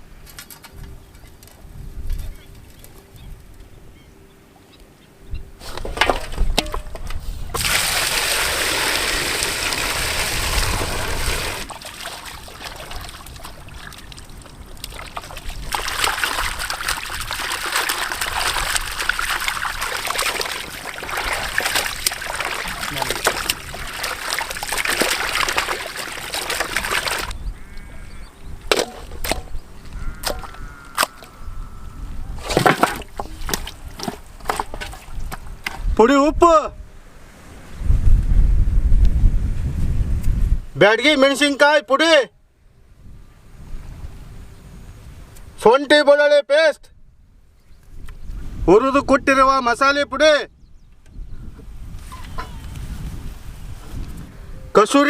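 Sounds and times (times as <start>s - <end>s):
water sloshing and splashing: 5.6s - 27.4s, 28.7s - 31.4s, 32.3s - 35.9s.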